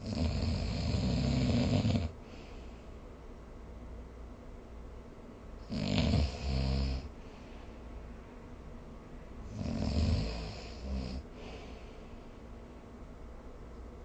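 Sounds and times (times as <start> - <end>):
person snoring: 0.0 - 2.2, 5.7 - 7.1, 9.5 - 11.8.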